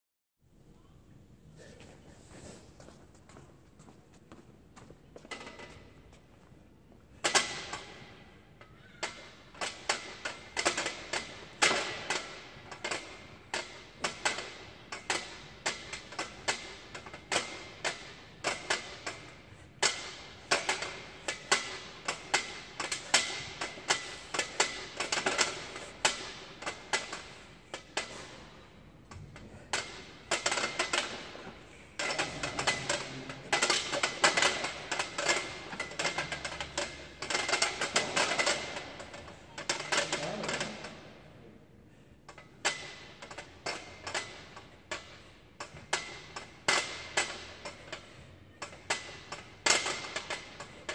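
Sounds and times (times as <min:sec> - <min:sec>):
pull-up bar rattling and clicking: 0:07.2 - 0:08.2, 0:09.0 - 0:41.1, 0:42.3 - 0:50.9.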